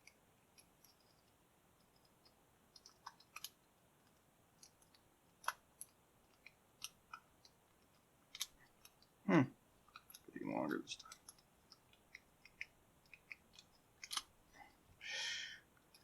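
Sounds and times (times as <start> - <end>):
lock pick metallic clicks: 8.3 - 9.0, 11.0 - 14.3.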